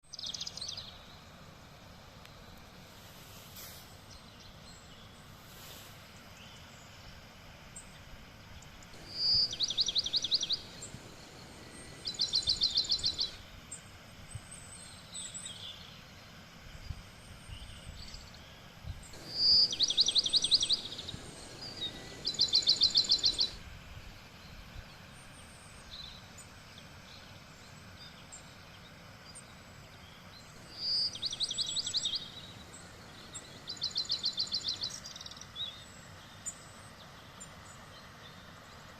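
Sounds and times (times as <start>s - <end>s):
faint forest background hiss: 0.0s - 38.9s
songbird trilling: 9.0s - 13.4s, 19.2s - 23.6s, 30.5s - 35.8s.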